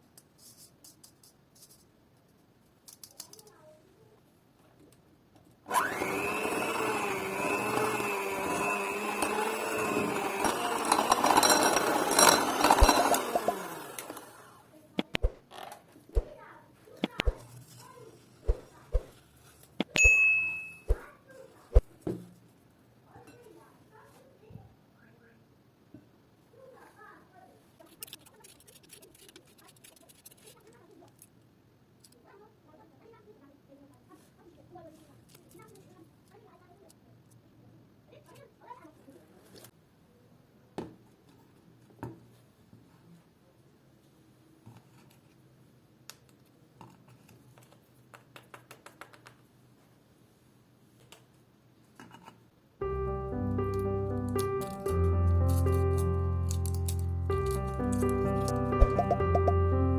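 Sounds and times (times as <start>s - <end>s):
small clicks and crackles: 0.0s - 5.6s, 27.7s - 32.4s, 34.8s - 37.4s, 46.1s - 49.5s, 50.9s - 51.4s
electric hand mixer running: 5.7s - 14.5s
mixer clicks and rattles: 9.2s - 14.3s.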